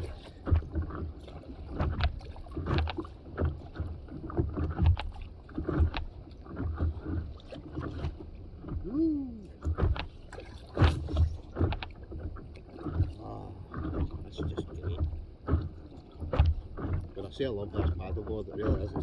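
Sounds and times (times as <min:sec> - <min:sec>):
paddle strokes splashing water: 0:00.0 - 0:19.0.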